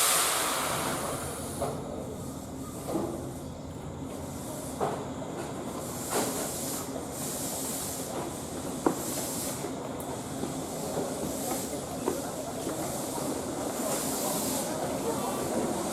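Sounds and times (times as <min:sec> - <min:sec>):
air hisses: 0:00.0 - 0:02.3, 0:05.8 - 0:11.9, 0:12.8 - 0:15.9
train rumble: 0:00.0 - 0:15.9.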